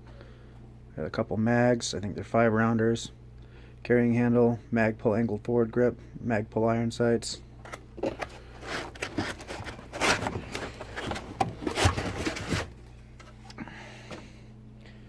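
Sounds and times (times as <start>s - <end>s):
steady low hum: 0.0s - 15.0s
handling rubbing and scraping: 8.0s - 14.3s.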